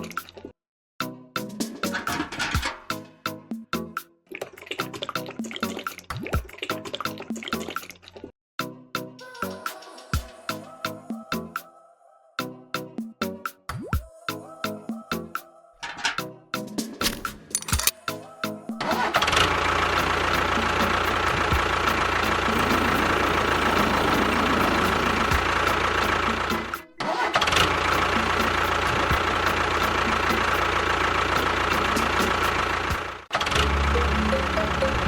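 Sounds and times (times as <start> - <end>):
music: 1.0 - 7.8, 8.6 - 27.3, 27.9 - 30.7, 31.4 - 35.0
motor humming and whining: 19.4 - 26.7.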